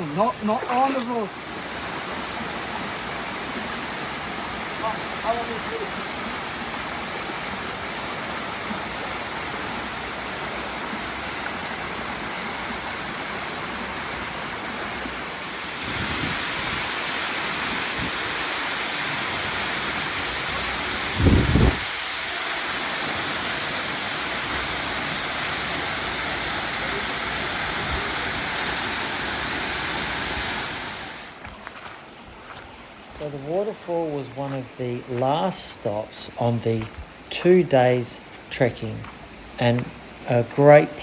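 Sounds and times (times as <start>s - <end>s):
waterfall rushing: 0.0s - 31.4s.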